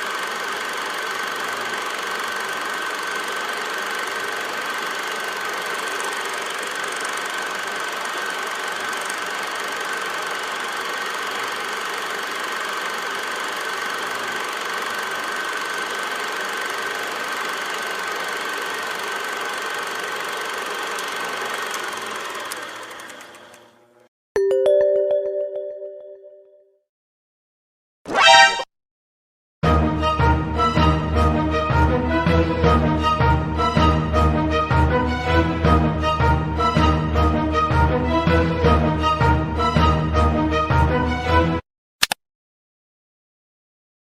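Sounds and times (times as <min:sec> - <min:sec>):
ringing musical tone: 0:24.4 - 0:26.6.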